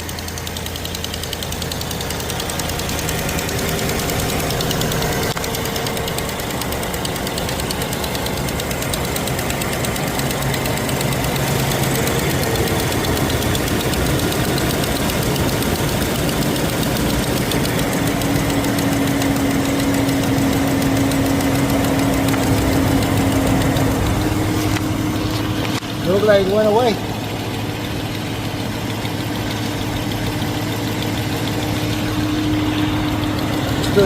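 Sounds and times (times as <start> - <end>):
car engine idling: 0.0 - 34.0
exhaust leak ticking: 0.0 - 34.0
steady tone: 30.2 - 34.0.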